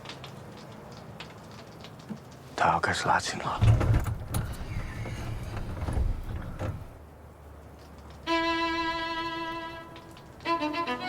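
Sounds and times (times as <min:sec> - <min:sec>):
low rumbling background noise: 0:02.6 - 0:11.0.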